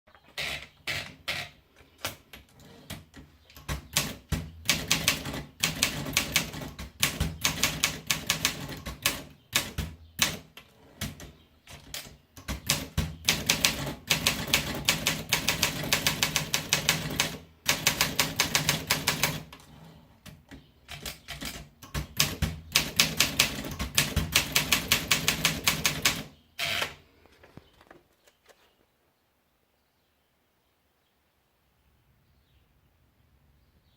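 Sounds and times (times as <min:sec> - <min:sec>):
typewriter keystrokes: 0:03.6 - 0:10.4, 0:11.0 - 0:19.6, 0:20.9 - 0:27.0.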